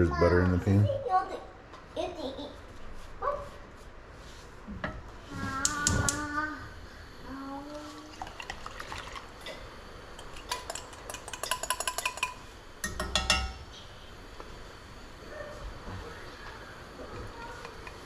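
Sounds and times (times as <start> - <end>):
utensils clinking against dishes: 10.2 - 13.6.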